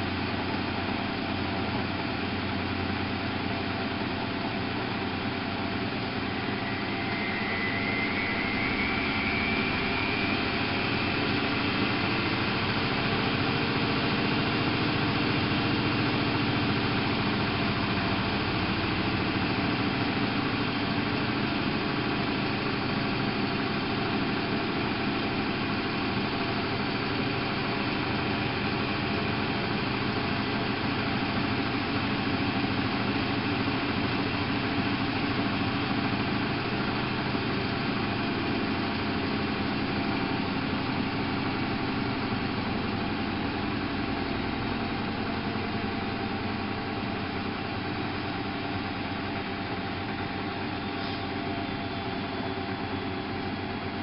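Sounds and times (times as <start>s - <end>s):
washing machine motor hum: 5.3s - 19.3s.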